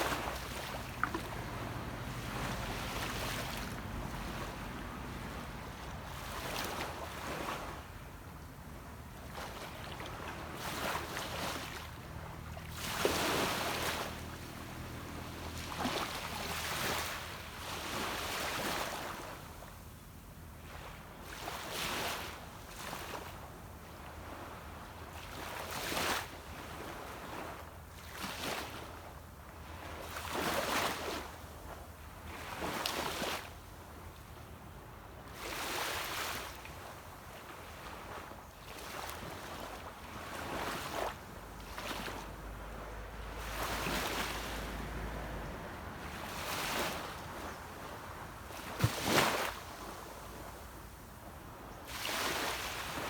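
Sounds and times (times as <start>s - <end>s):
sea waves washing onto beach: 0.0s - 8.4s, 35.3s - 53.0s
distant boat motor hum: 0.0s - 19.6s, 40.0s - 51.7s.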